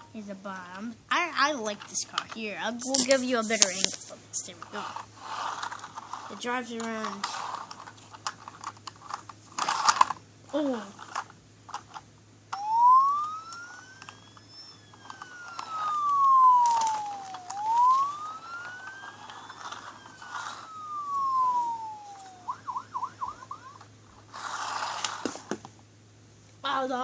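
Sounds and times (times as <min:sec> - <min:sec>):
toy police siren wailing: 0:12.6 - 0:24.6.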